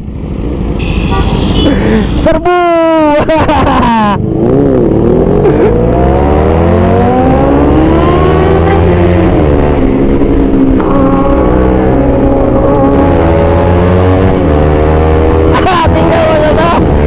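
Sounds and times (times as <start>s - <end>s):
motorcycle siren horn wailing: 0.8s - 2.3s, 8.5s - 9.0s
steady low drone: 4.3s - 15.1s.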